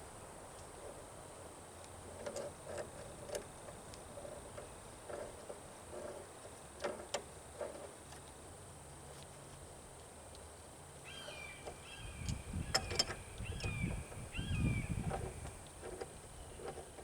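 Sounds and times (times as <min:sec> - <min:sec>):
hand tools clicking and knocking: 0:11.6 - 0:13.8.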